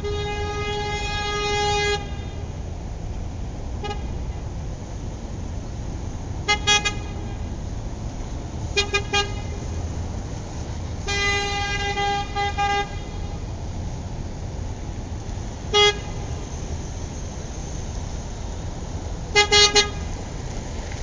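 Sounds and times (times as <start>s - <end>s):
car horn honking: 0.0s - 2.5s, 3.8s - 4.2s, 6.4s - 7.5s, 8.7s - 9.6s, 11.0s - 13.4s, 15.7s - 16.5s, 19.3s - 20.1s.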